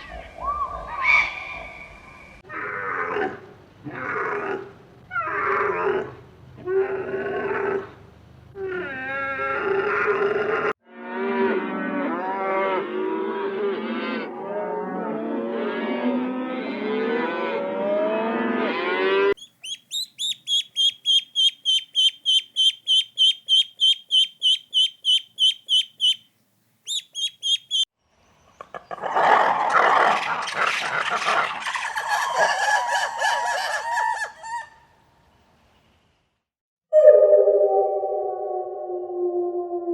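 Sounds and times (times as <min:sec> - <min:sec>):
farm animal calls: 0:19.4 - 0:26.2, 0:26.9 - 0:27.8
high rapid pulsing animal call: 0:19.4 - 0:26.2, 0:26.9 - 0:27.9.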